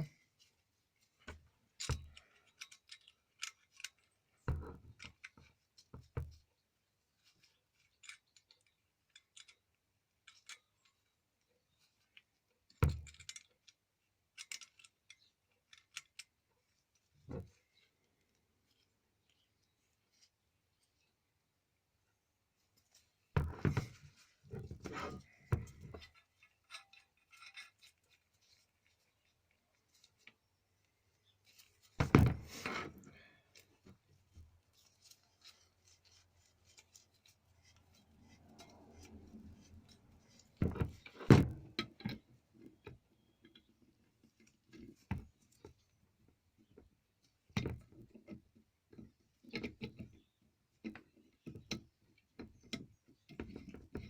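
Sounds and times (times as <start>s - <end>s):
metal parts knocking and clicking: 7.8s - 11.2s, 12.1s - 16.4s, 23.4s - 29.6s.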